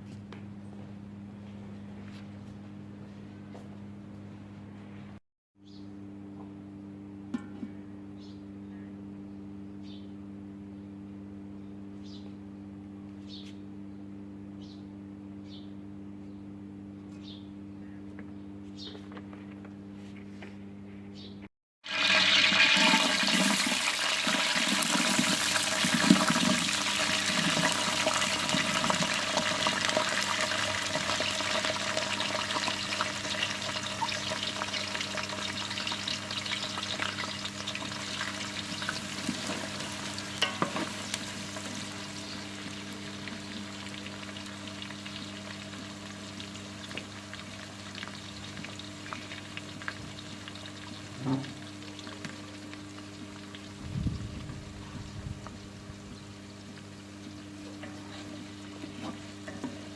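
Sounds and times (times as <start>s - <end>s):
steady low hum: 0.0s - 21.5s, 37.5s - 59.9s
food sizzling in hot oil: 21.8s - 53.8s.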